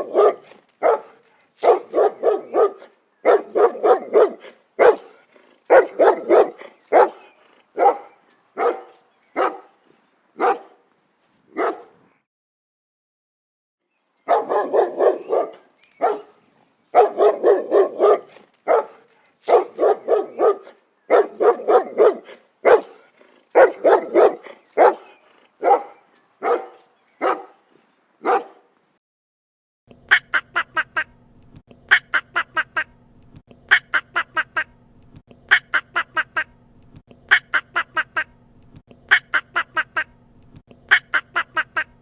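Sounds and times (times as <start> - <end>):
dog barking: 0.0 - 9.7, 10.4 - 10.8, 11.5 - 12.0, 14.3 - 27.6, 28.2 - 28.7
duck-like quacks: 30.1 - 31.2, 35.5 - 36.6, 39.0 - 40.2, 40.9 - 42.0.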